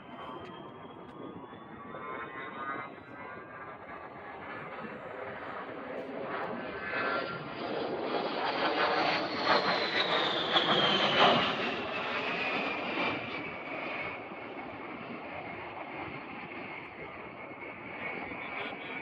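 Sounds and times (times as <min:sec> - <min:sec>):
high engine whine: 0:00.0 - 0:19.0
jet aircraft passing: 0:00.0 - 0:19.0.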